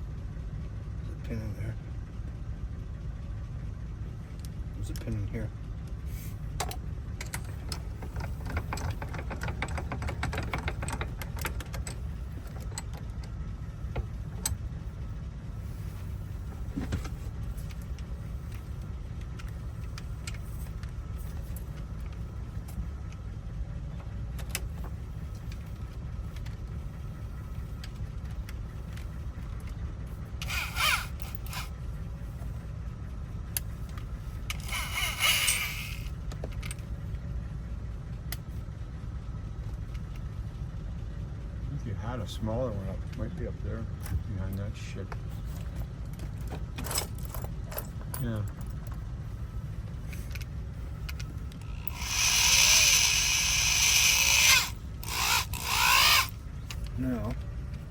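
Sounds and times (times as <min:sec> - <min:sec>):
steady low rumble: 0:00.0 - 0:57.9
short scraping bursts: 0:34.6 - 0:36.1, 0:51.7 - 0:56.4.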